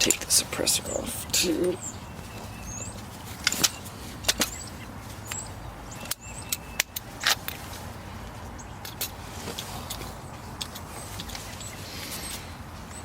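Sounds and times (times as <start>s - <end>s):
clicks and knocks of rifle handling: 3.2s - 4.6s.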